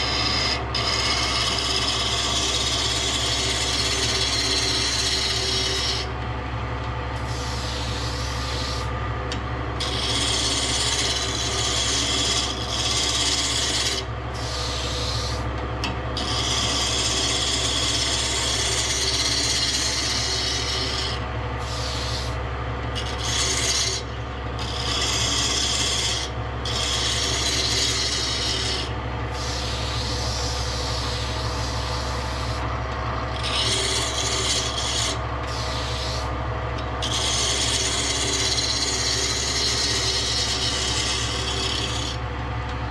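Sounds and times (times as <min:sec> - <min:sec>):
steady motor hum: 0:00.0 - 0:42.9
wood scraping hiss: 0:35.0 - 0:36.3.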